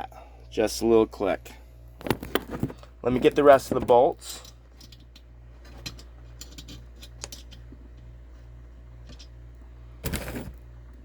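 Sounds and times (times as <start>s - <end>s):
steady low hum: 0.0s - 11.0s
hardware rattle: 2.0s - 8.1s.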